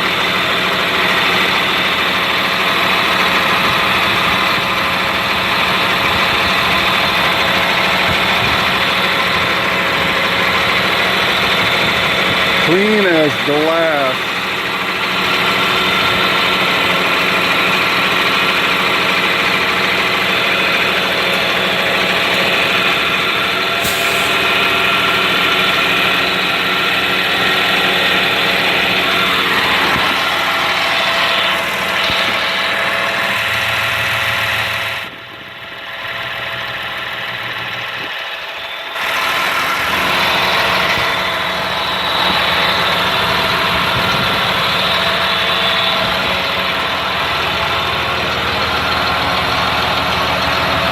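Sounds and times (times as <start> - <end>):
diesel bus engine idling: 0.0 - 50.9.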